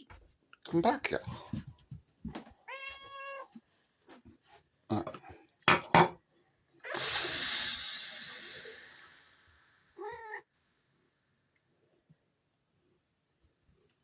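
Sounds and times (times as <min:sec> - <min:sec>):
wavering cat meow: 0:02.7 - 0:03.6, 0:10.0 - 0:10.4
hiss of noise: 0:06.9 - 0:10.0.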